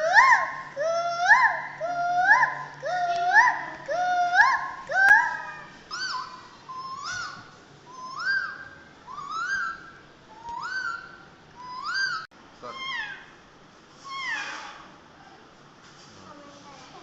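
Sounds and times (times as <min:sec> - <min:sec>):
animal calling: 0:00.0 - 0:13.4.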